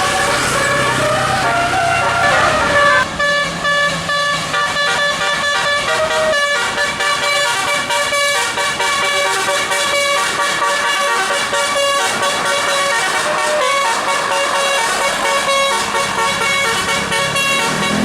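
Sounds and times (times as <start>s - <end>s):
low engine hum: 0.0s - 6.3s
musical air horn playing a tune: 0.0s - 18.0s.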